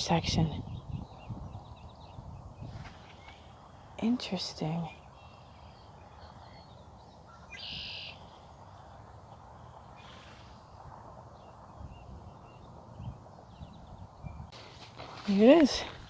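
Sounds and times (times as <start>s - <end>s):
faint distant bird chirps: 0.6s - 14.5s
bird call: 5.2s - 8.4s.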